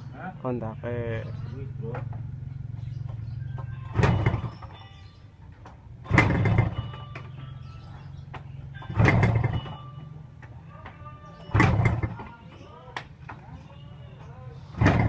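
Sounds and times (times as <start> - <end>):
low steady engine hum: 0.0 - 15.0
old engine bursts: 2.2 - 10.1, 11.5 - 12.3, 14.7 - 15.0.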